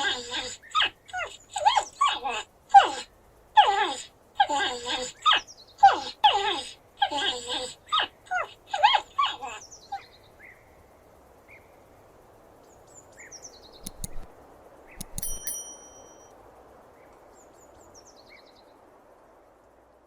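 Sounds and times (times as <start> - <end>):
small bird chirping: 12.9 - 14.3, 14.9 - 16.3
metallic ding: 15.0 - 16.3.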